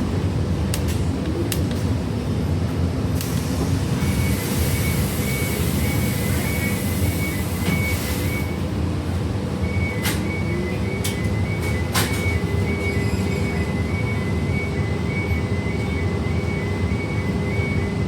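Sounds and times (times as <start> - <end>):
bus engine rumbling: 0.0 - 18.0
high warning beeps: 4.0 - 8.6, 9.6 - 18.0.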